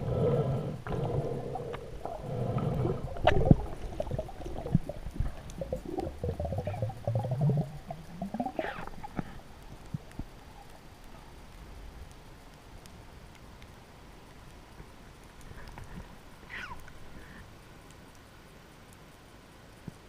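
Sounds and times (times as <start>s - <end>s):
gurgling water: 0.0s - 11.5s.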